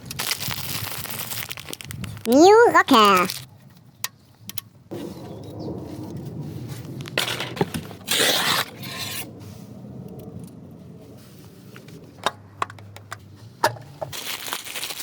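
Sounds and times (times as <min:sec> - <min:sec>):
metal scrape: 0:06.7 - 0:09.6.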